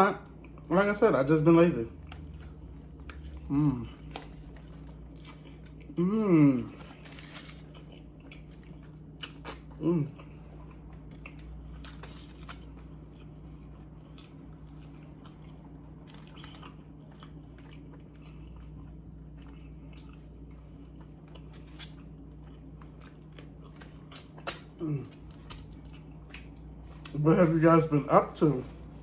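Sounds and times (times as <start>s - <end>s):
low steady hum: 0.0s - 29.0s
person chewing: 2.1s - 27.3s
wet mouth clicks and smacks: 24.2s - 24.7s.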